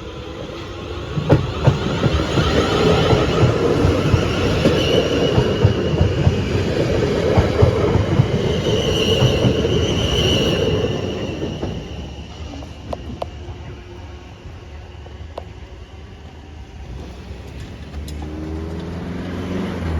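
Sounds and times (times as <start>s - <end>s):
train wheels clattering over rails: 0.0s - 13.4s
high wheel squeal: 1.4s - 15.0s.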